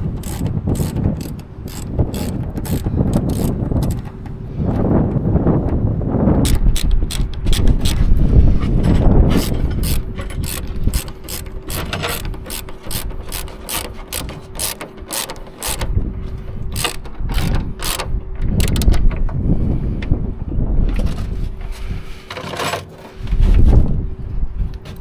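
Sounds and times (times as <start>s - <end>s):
ratchet wrench clicking: 0.0s - 4.1s, 9.3s - 15.9s, 16.7s - 18.9s.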